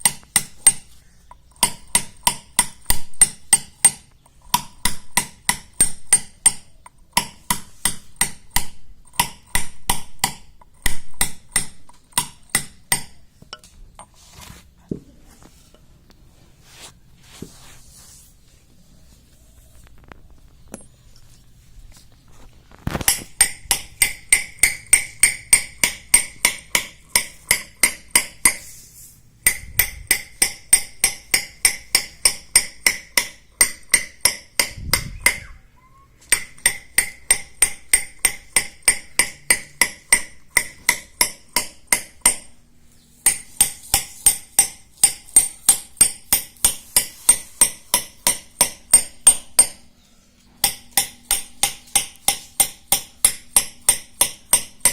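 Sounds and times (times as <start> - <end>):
hammer tapping metal chisel on stone: 0.0 - 13.7, 23.0 - 28.6, 29.4 - 35.5, 36.2 - 42.5, 43.2 - 49.9, 50.6 - 54.9.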